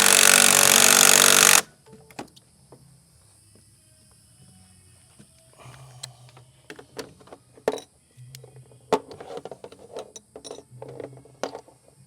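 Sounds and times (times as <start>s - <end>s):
ratchet wrench clicking: 0.0s - 1.6s.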